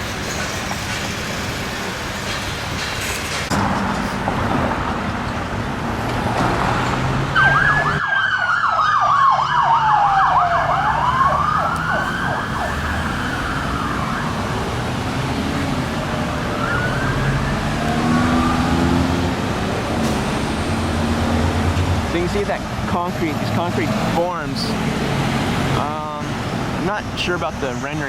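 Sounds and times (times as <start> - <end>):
street traffic: 0.0 - 28.0
siren wail: 7.3 - 19.3
siren yelp: 7.4 - 14.8, 16.3 - 19.1.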